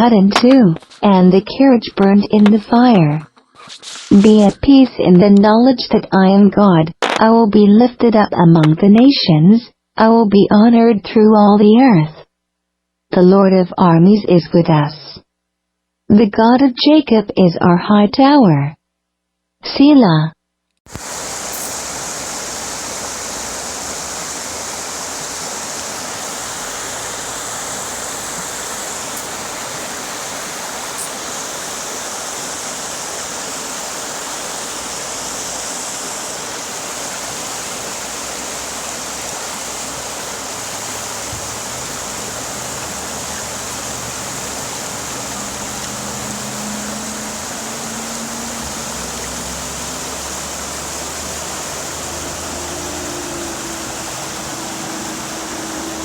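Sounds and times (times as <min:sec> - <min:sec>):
rushing water: 0:20.9 - 0:56.0.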